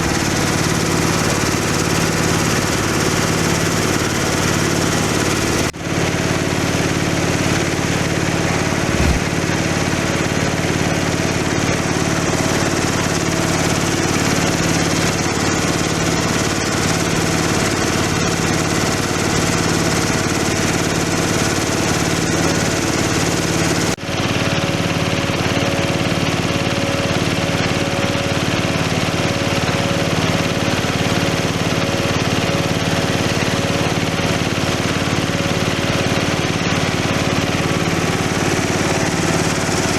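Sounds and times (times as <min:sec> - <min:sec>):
grinding machine running: 0:00.0 - 0:05.7.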